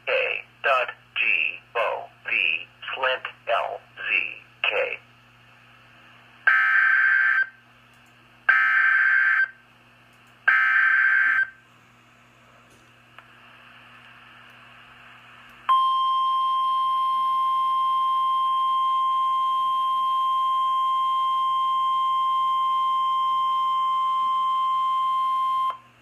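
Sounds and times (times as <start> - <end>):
faint radio hiss: 0.0 - 6.4
steady alarm beep: 15.7 - 25.8.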